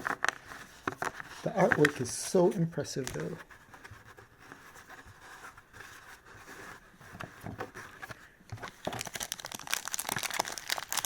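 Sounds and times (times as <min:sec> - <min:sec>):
trading cards clicking and rustling: 0:00.0 - 0:02.3.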